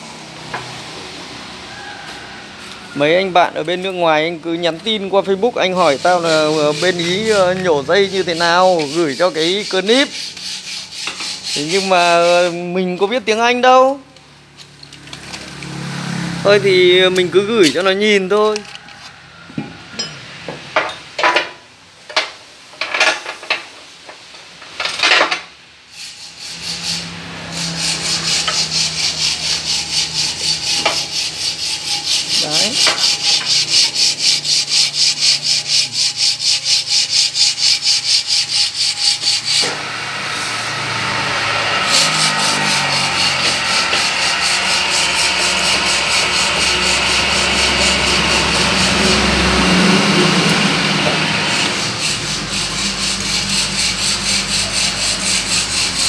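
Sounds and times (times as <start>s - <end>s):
copper windings scraping out: 26.0s - 56.0s
machine hum: 37.4s - 56.0s.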